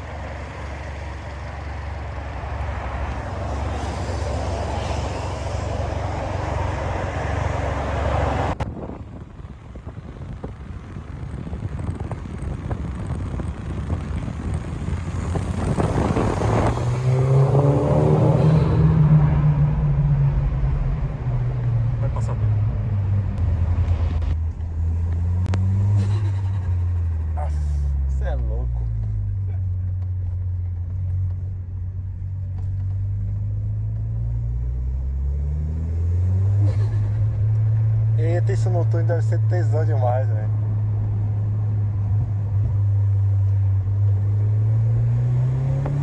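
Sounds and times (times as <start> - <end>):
road drone: 0.0 - 46.0
turbocharged car engine accelerating: 0.0 - 46.0
short rush of noise: 3.2 - 8.7.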